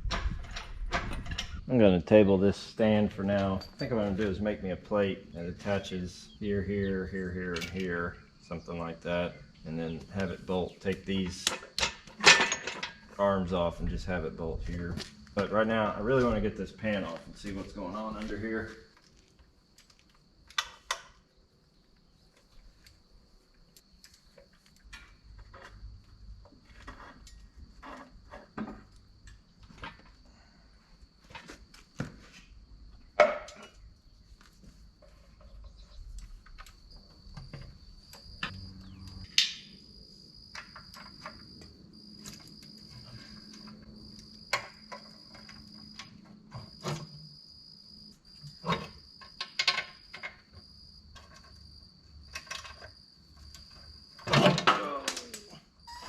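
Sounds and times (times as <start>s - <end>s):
insect trill: 2.7s - 56.0s
hand tools clanking on metal: 3.3s - 4.4s, 7.4s - 8.1s, 10.8s - 13.3s.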